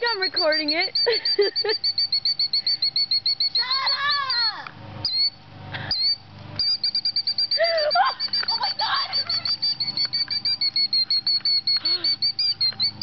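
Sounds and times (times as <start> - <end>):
bird alarm chirps: 0.0 - 13.0
bird sliding pitched cries: 2.6 - 13.0.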